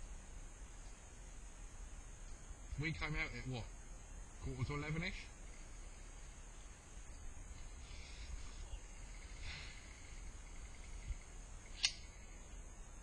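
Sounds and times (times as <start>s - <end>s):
soft hiss: 0.0s - 13.0s
sharp click: 11.7s - 12.1s.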